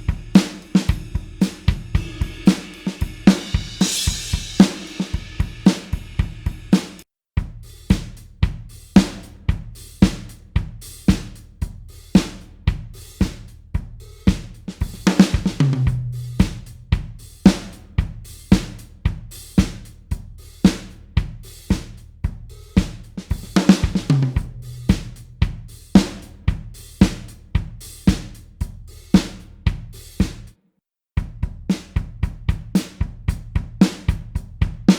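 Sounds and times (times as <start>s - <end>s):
tom fill: 0.0s - 9.3s, 22.8s - 27.2s
rock drum kit beat: 0.0s - 30.5s, 31.2s - 34.9s.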